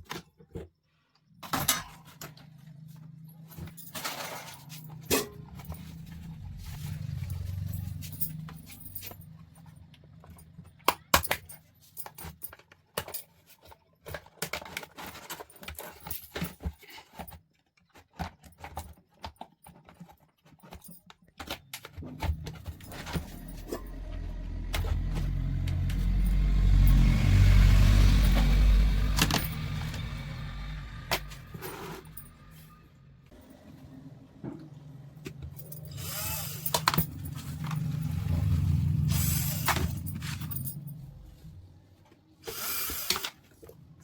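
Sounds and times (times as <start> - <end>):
metal parts clicking and rattling: 3.4 - 27.1, 28.1 - 32.8, 35.4 - 41.6.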